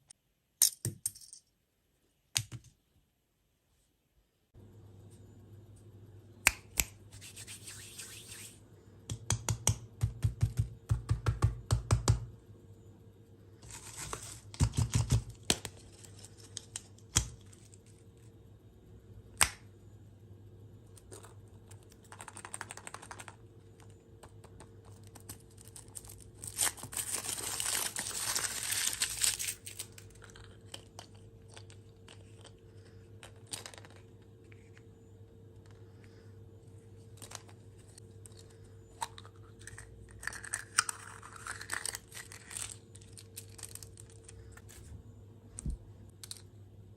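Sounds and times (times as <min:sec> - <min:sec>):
packaging being torn and crinkled: 0:25.0 - 0:30.9, 0:39.7 - 0:44.3.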